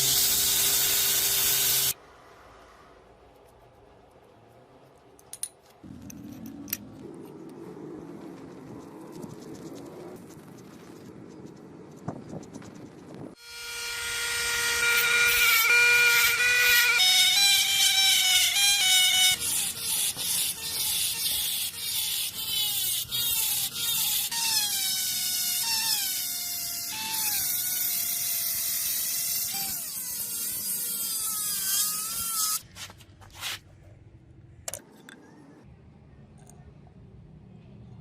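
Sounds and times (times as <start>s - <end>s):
power tool grinding metal: 0.0s - 2.0s, 13.4s - 25.0s.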